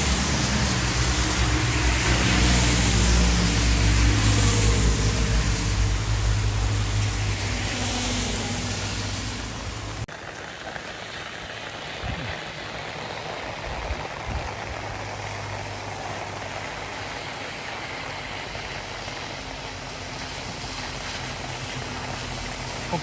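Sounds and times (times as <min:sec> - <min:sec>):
low engine hum: 0:00.0 - 0:10.1
heavy rain falling: 0:00.0 - 0:23.0.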